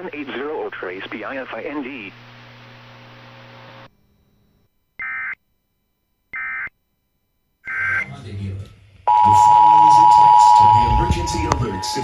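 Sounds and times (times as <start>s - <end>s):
broadcast hiss and hum: 0.0s - 12.0s
buzzy digital tone bursts: 10.4s - 12.0s.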